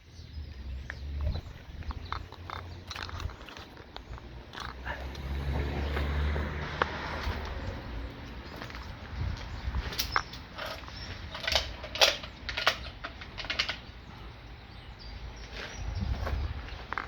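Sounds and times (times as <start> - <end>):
crossbow mechanical clicks and creaks: 1.2 - 5.4.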